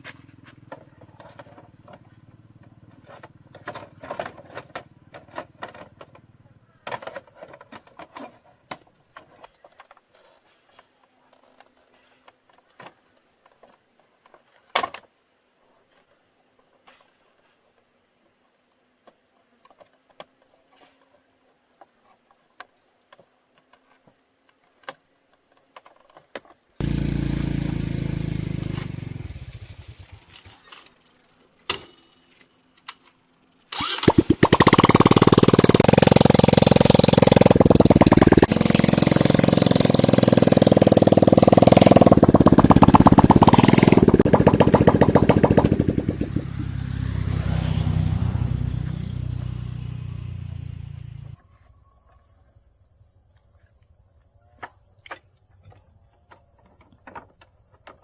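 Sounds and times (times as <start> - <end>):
loud machine running: 26.8 - 28.6, 34.1 - 45.9.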